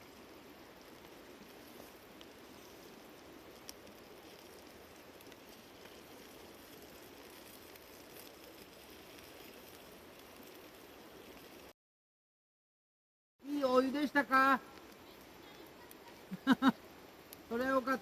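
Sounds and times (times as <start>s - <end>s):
outdoor background noise: 0.0s - 11.8s, 13.4s - 18.0s.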